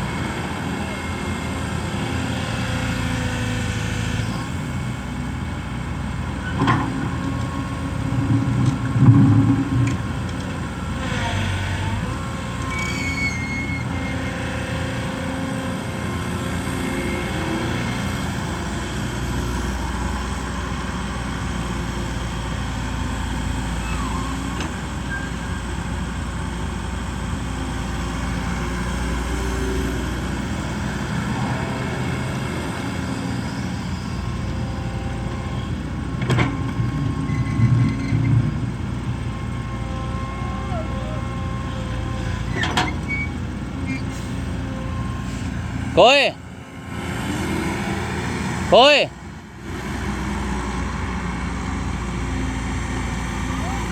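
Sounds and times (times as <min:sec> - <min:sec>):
diesel machinery running: 0:00.0 - 0:53.9
low thump: 0:08.2 - 0:10.2.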